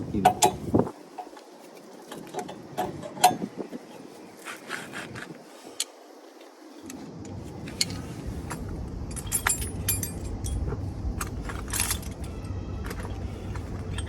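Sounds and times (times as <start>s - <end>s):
low rumble: 7.3s - 14.0s
metal hand tools clinking: 9.1s - 12.5s.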